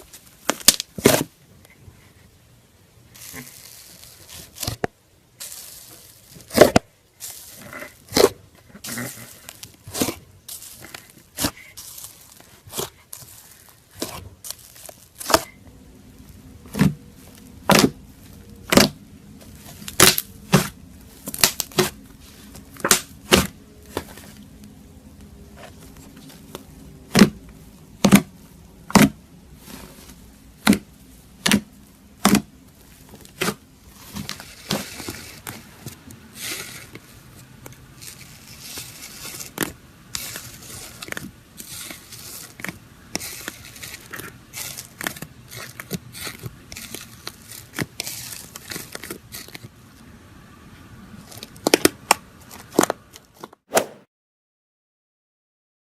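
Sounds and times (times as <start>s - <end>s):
slime crackling: 5.4s - 49.7s.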